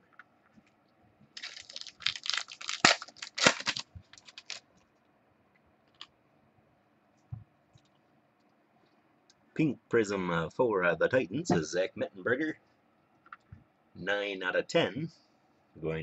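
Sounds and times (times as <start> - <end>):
cards and plastic packaging rustling: 1.3 - 4.7.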